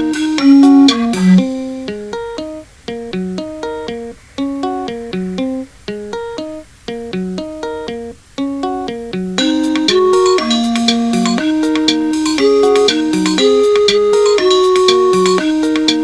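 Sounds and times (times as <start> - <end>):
plucked note melody: 0.0 - 4.0, 8.6 - 16.0.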